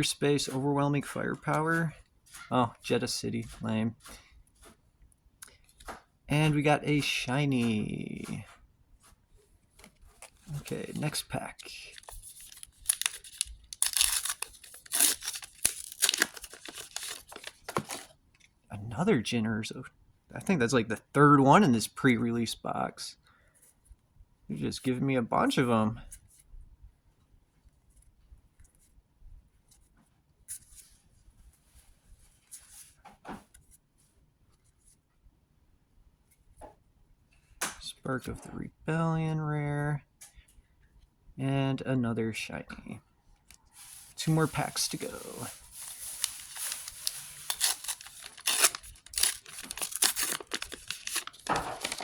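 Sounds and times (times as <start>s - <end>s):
trading cards rustling and clicking: 9.8s - 18.2s, 44.2s - 52.0s
foil pack tearing and crinkling: 10.2s - 18.2s, 43.9s - 52.0s.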